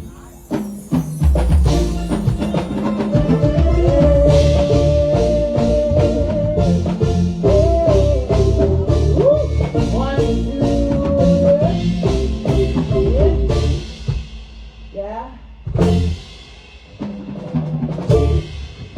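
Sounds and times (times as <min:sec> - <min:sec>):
bent melody line: 0:00.0 - 0:15.1, 0:15.7 - 0:16.5, 0:18.0 - 0:18.9
drum kit beat: 0:00.0 - 0:18.9
bass line: 0:01.2 - 0:16.4, 0:17.9 - 0:18.6.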